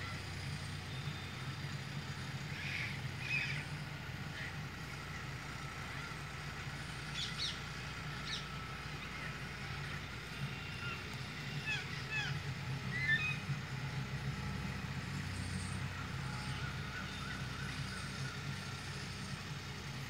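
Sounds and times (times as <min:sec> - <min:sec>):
steady low hum: 0:00.0 - 0:20.0
parrots shrill calls: 0:10.8 - 0:13.4.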